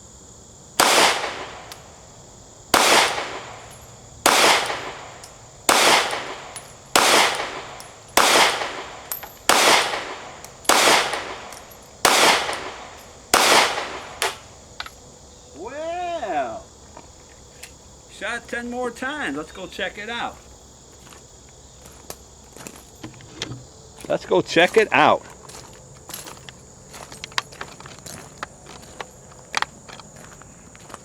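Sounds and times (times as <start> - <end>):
pistol shots echoing: 0.8 - 14.9.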